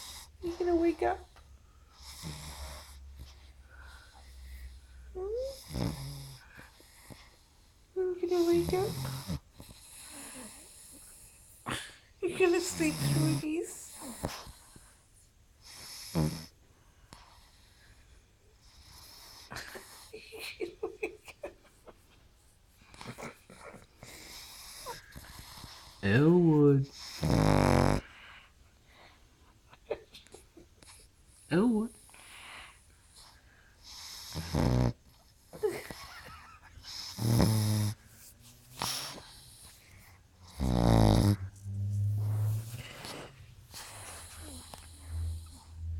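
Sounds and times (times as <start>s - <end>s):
dog snoring and snorting: 0.0s - 14.9s, 15.6s - 16.6s, 18.6s - 20.3s, 22.8s - 28.4s, 30.3s - 38.1s, 38.7s - 45.9s.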